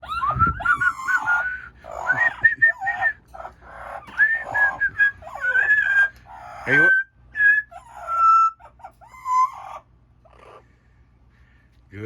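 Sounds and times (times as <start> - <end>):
parrot chattering calls: 0.0 - 7.0, 7.6 - 10.6
parrot whistling: 0.0 - 9.8.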